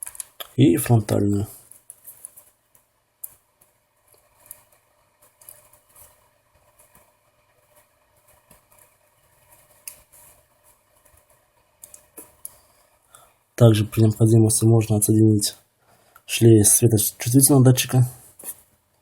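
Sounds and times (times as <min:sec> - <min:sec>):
small parts clicking and scraping: 0:00.0 - 0:00.5.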